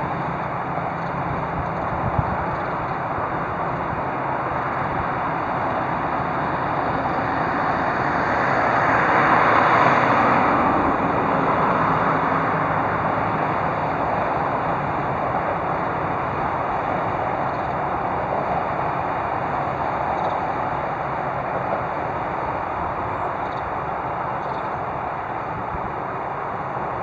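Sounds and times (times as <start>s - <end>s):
road traffic hiss: 0.0s - 27.0s
vehicle passing: 4.8s - 17.2s.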